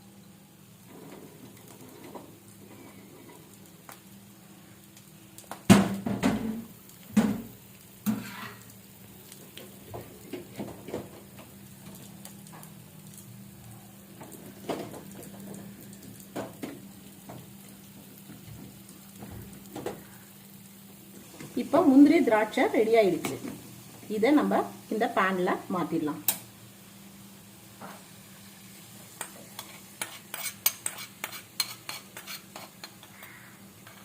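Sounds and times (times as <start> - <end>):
nuts frying and sizzling in ghee: 0.0 - 34.0
spoon knocking and scraping pan: 5.8 - 8.6, 29.1 - 34.0.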